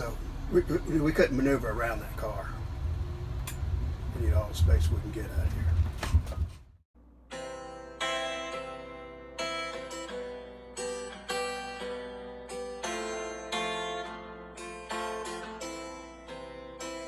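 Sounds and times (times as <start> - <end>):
plucked string instrumental music: 7.2 - 17.0.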